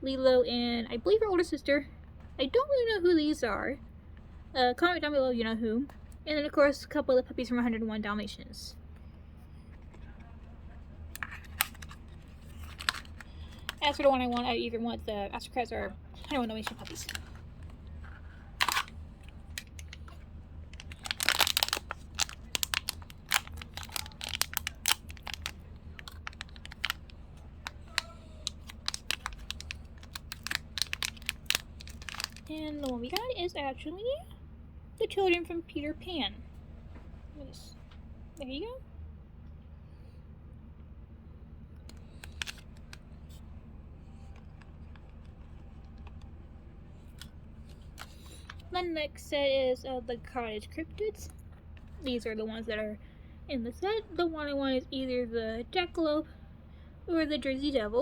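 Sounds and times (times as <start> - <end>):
low steady hum: 0.0 - 58.0
packaging crinkling: 11.1 - 14.4, 16.2 - 33.3, 41.8 - 43.4, 46.9 - 48.7.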